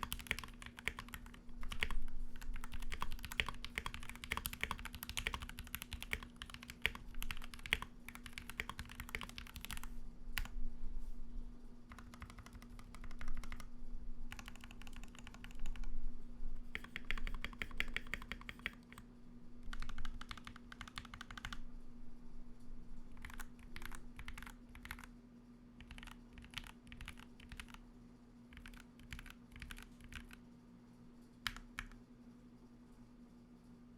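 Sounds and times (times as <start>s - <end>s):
mechanical keyboard typing: 0.0s - 10.5s, 11.9s - 13.7s, 14.3s - 15.9s, 16.7s - 19.0s, 19.6s - 21.6s, 23.1s - 25.1s, 25.8s - 27.8s, 28.5s - 30.4s, 31.4s - 32.0s
faint steady hum: 0.0s - 33.9s.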